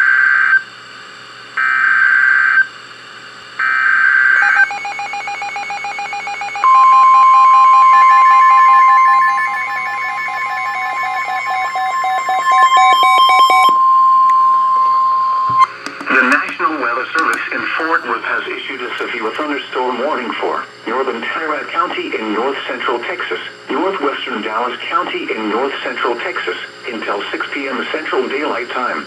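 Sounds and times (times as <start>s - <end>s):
steady alarm tone: 3.6s - 17.0s
fast electronic beeping: 4.4s - 16.5s.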